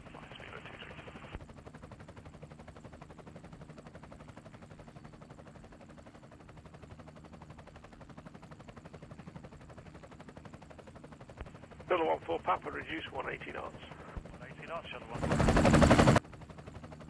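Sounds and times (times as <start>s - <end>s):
steady low hum: 8.7s - 17.0s.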